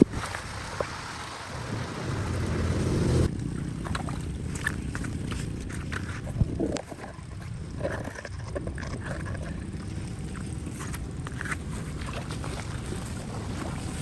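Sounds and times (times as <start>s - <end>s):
water rushing into a drain: 0.0s - 5.4s, 9.4s - 14.0s.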